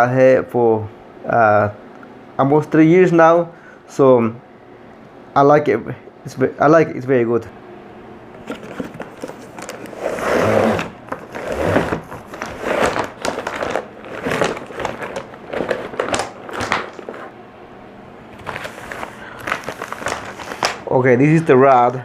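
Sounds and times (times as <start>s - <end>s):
cardboard box being unpacked: 8.4s - 17.3s, 18.4s - 20.9s.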